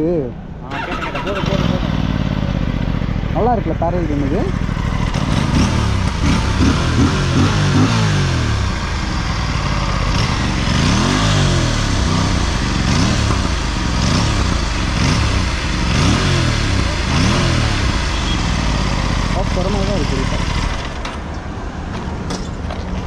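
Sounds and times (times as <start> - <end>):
motorcycle engine throttle blips: 0.7 - 20.9.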